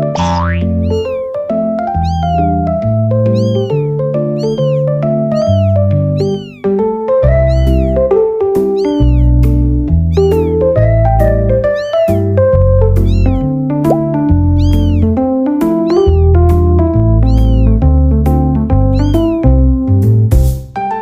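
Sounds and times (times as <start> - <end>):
background music: 0.0 - 21.0
kitten meows: 0.2 - 1.3, 1.9 - 2.6, 3.2 - 15.2, 15.8 - 16.4, 17.2 - 17.8, 18.9 - 19.5.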